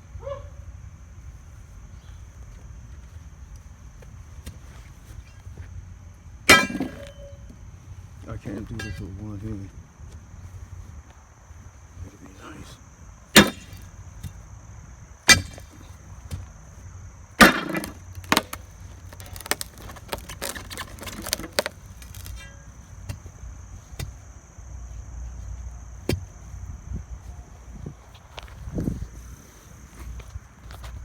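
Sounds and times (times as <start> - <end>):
sledgehammer striking concrete: 6.5 - 7.2, 13.4 - 13.9, 15.3 - 16.4, 17.4 - 18.6.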